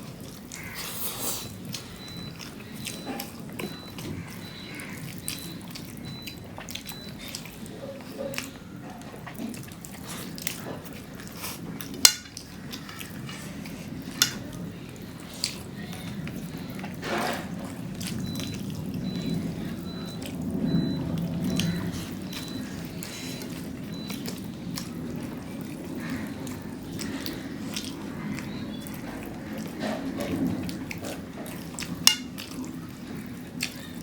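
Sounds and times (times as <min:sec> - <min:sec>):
wet chewing: 0:00.0 - 0:34.0
clinks on plates: 0:12.0 - 0:12.4, 0:14.1 - 0:14.5, 0:32.0 - 0:32.4.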